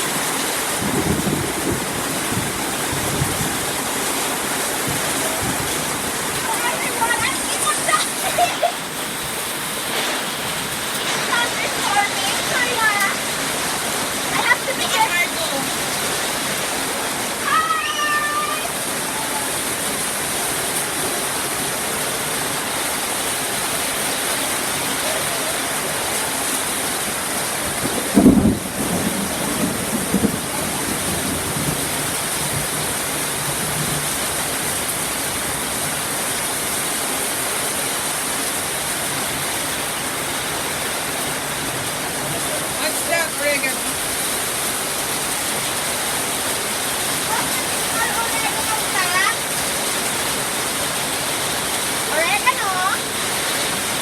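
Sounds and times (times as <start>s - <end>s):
heavy rain: 0.0s - 54.0s
brief high-pitched voice: 17.4s - 19.6s.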